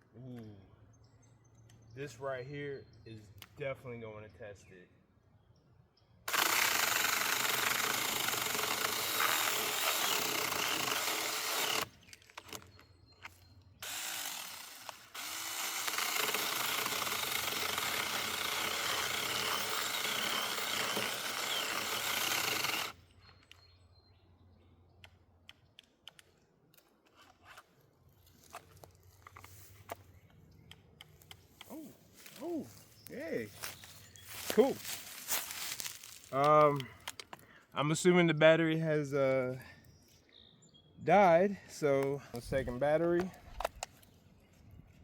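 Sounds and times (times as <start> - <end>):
mini chainsaw cutting: 6.3 - 12.7, 13.8 - 23.0.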